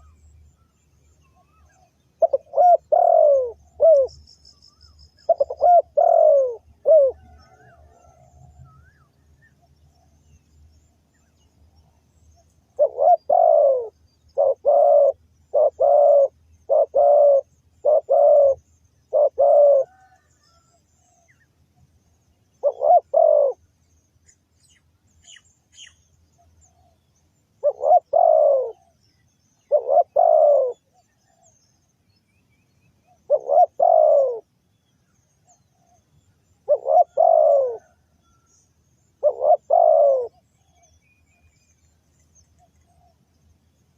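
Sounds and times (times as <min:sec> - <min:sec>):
dove cooing: 0:01.4 - 0:04.2, 0:05.2 - 0:09.0, 0:12.7 - 0:21.3, 0:22.5 - 0:23.7, 0:27.6 - 0:29.0, 0:29.6 - 0:31.6, 0:33.1 - 0:34.5, 0:35.6 - 0:38.5, 0:39.2 - 0:40.9.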